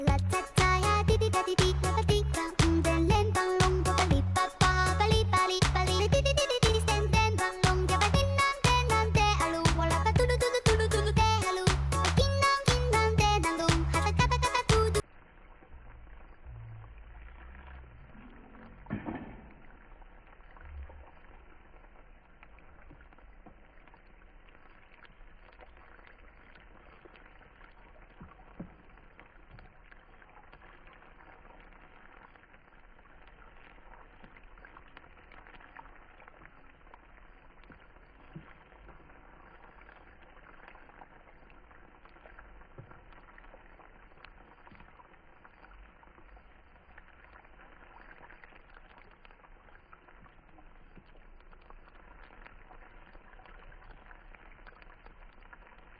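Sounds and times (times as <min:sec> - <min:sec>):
oil popping: 0:00.0 - 0:55.9
food sizzling in hot oil: 0:19.6 - 0:55.9.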